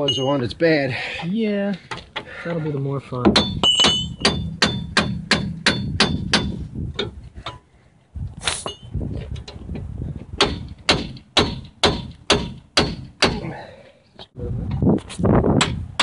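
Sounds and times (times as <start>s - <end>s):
hammer striking steel: 3.2s - 6.6s, 10.4s - 13.4s.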